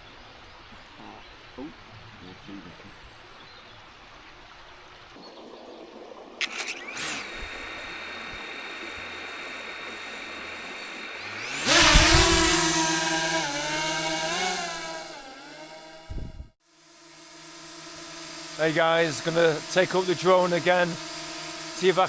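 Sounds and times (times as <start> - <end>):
drone motors whining: 6.4 - 22.0.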